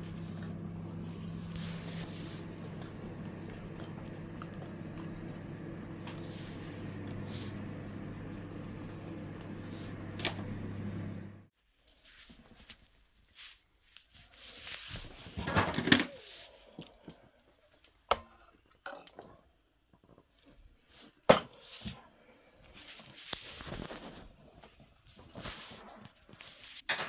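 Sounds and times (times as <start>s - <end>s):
rustling: 0.0s - 3.3s
steady electrical hum: 0.0s - 11.5s.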